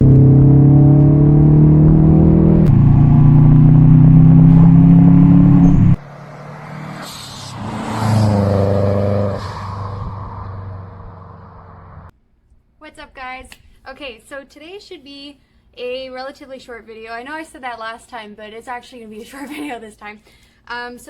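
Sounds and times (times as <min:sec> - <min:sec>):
car engine running loud: 0:00.0 - 0:12.1
quieter engine revving: 0:00.0 - 0:12.1.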